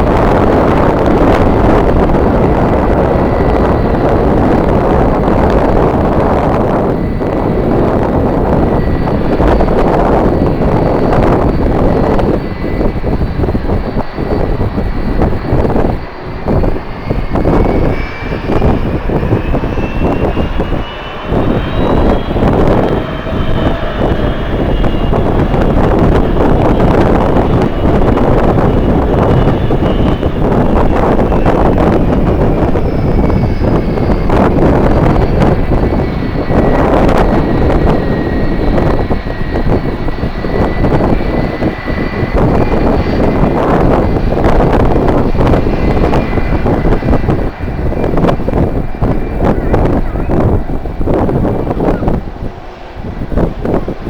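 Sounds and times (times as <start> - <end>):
jet engines whining: 0.0 - 54.0
wind buffeting microphone: 0.0 - 54.0.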